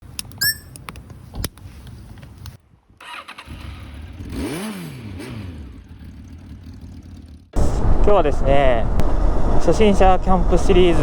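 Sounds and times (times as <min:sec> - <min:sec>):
short electronic beep: 0:00.4 - 0:00.7
motorcycle engine starting and revving: 0:03.0 - 0:08.0.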